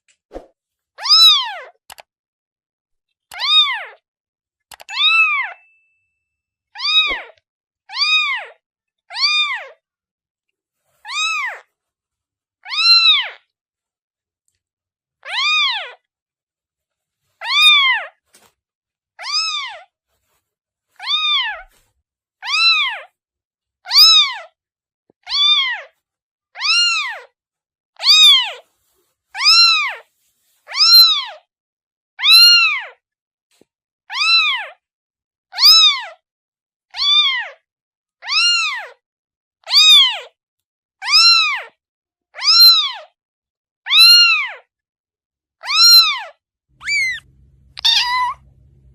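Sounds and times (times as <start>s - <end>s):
kitten meowing: 12.7s - 13.4s, 22.4s - 23.1s, 26.6s - 27.3s, 28.0s - 28.6s, 30.7s - 31.4s, 32.2s - 32.9s, 34.1s - 34.7s, 35.6s - 36.1s, 37.0s - 37.6s, 38.2s - 38.9s, 39.7s - 40.3s, 41.0s - 41.7s, 42.4s - 43.1s, 43.9s - 44.6s, 45.6s - 48.5s.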